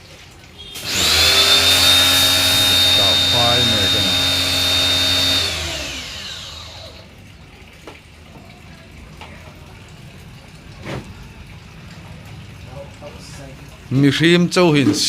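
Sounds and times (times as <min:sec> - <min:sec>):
electric motor whining: 0:00.8 - 0:07.1.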